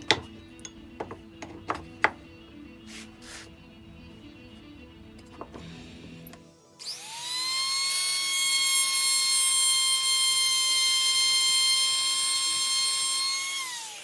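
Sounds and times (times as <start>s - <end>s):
rotary tool high-pitched whine: 6.8s - 14.0s.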